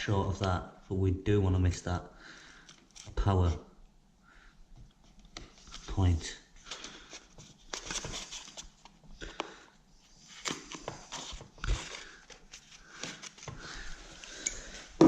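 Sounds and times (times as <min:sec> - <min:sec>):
paper rustling and crinkling: 0:06.6 - 0:09.4, 0:10.1 - 0:14.4.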